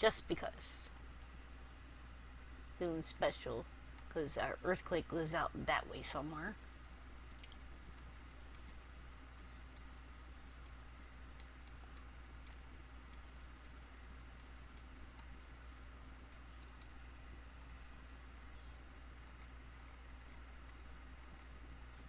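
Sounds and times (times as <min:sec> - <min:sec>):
low electrical hum: 0:00.0 - 0:22.0
computer mouse clicks: 0:07.2 - 0:07.6, 0:09.7 - 0:09.9, 0:11.4 - 0:13.3, 0:16.3 - 0:17.0.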